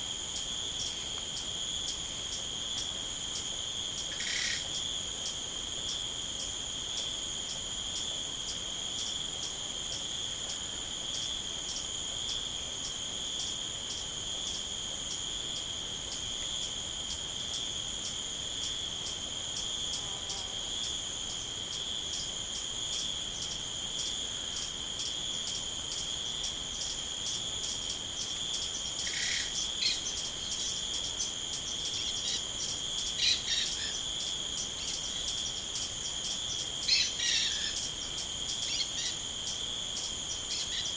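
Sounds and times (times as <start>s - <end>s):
crickets trilling: 0.0s - 40.9s.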